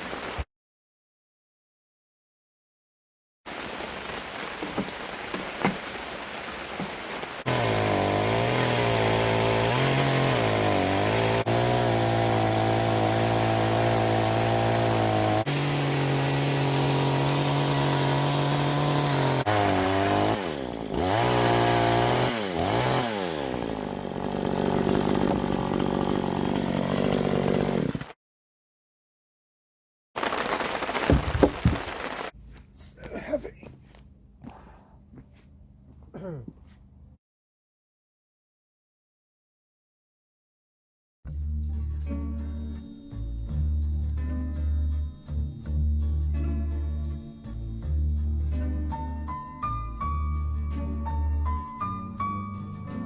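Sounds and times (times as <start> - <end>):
chainsaw cutting log: 6.8 - 28.2, 30.2 - 32.3.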